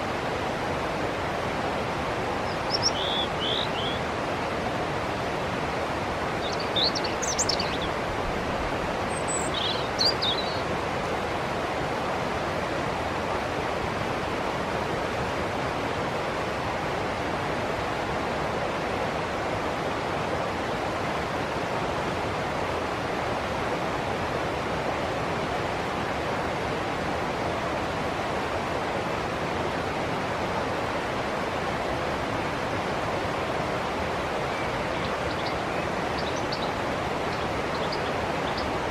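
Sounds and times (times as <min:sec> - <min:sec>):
river water rushing: 0:00.0 - 0:38.9
small birds chirping: 0:02.5 - 0:04.0, 0:06.4 - 0:08.0, 0:09.1 - 0:10.6, 0:34.5 - 0:38.9.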